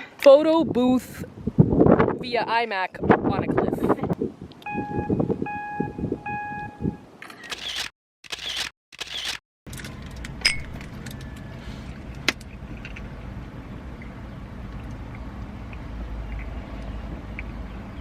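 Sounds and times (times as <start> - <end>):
road and engine rumble: 3.5 - 18.0
sharp clicks: 7.2 - 11.4.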